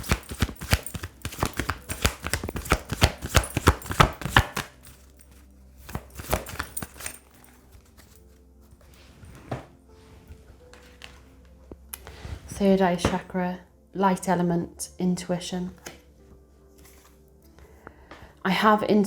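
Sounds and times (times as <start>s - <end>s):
cards being shuffled: 0.0s - 9.6s.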